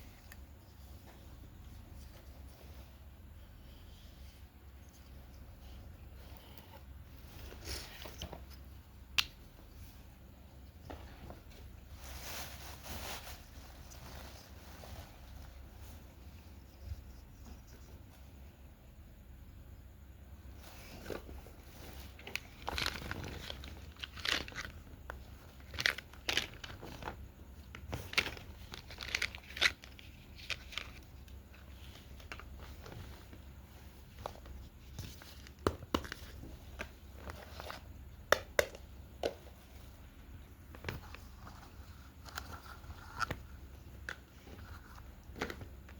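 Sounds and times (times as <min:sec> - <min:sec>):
plastic packaging crinkling: 0:22.0 - 0:33.1.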